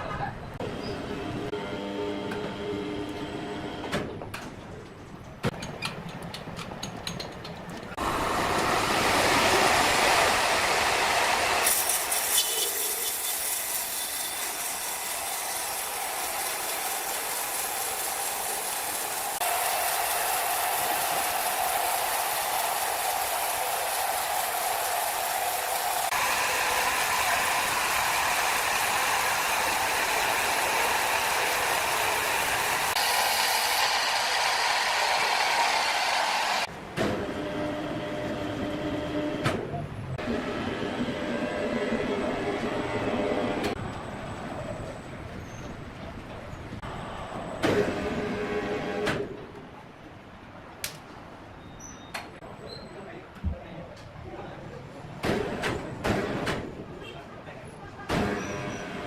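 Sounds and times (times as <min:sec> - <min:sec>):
sawmill machinery cutting wood: 0:08.0 - 0:39.4.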